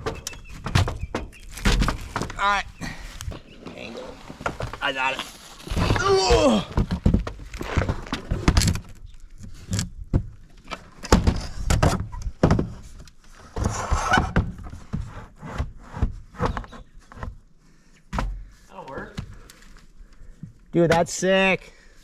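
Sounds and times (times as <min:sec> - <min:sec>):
wooden frame knocks and thumps: 0:00.0 - 0:02.5, 0:05.7 - 0:08.8, 0:10.1 - 0:17.4.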